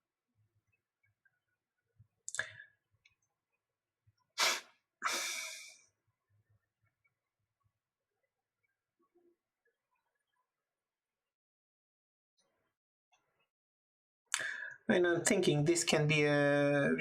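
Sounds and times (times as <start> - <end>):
person breathing bursts: 4.4 - 5.8.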